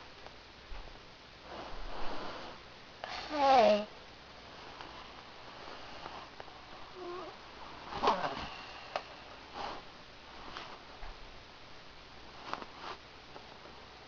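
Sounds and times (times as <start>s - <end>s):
person snoring: 2.1s - 3.9s, 8.0s - 8.8s.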